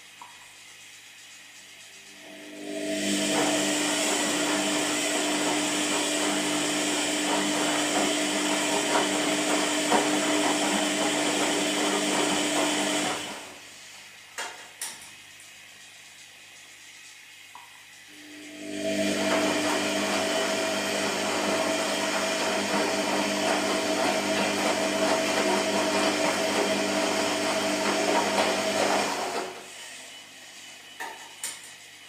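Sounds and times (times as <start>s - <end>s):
washing machine motor churning: 2.0s - 13.8s, 17.3s - 30.3s.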